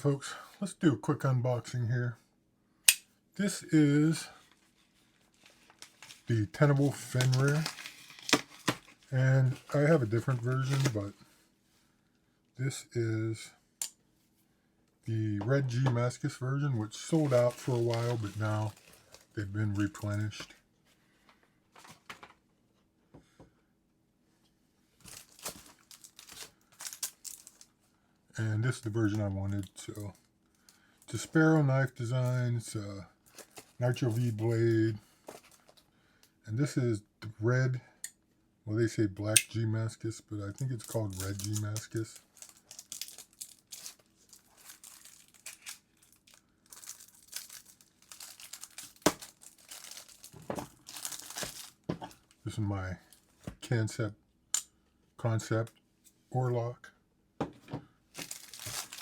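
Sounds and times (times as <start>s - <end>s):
packaging taps and rustles: 5.3s - 11.1s, 17.1s - 20.5s, 25.0s - 27.6s, 33.3s - 34.2s, 40.8s - 52.4s, 58.2s - 59.0s.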